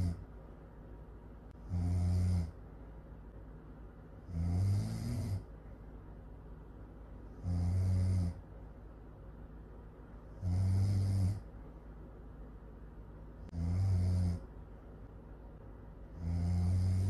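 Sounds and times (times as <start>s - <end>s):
person snoring loudly: 1.6s - 2.6s, 4.3s - 5.5s, 7.4s - 8.4s, 10.4s - 11.5s, 13.5s - 14.5s, 16.1s - 17.0s.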